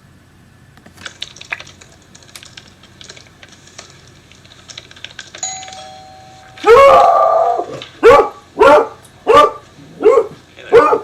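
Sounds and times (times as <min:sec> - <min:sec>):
keyboard keys clicking: 0:00.8 - 0:07.9.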